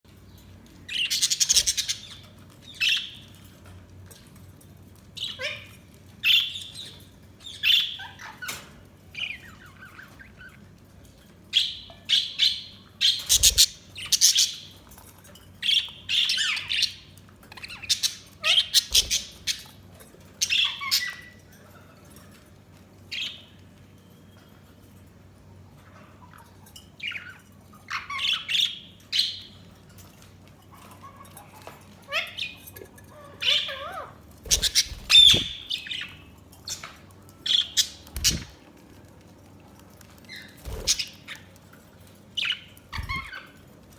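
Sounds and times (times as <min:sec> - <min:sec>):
budgerigars chirping and squawking: 0:00.9 - 0:03.4, 0:05.2 - 0:10.8, 0:11.6 - 0:14.9, 0:15.6 - 0:19.8, 0:20.4 - 0:21.5, 0:26.2 - 0:29.6, 0:30.7 - 0:38.6, 0:40.2 - 0:41.6, 0:42.4 - 0:43.7.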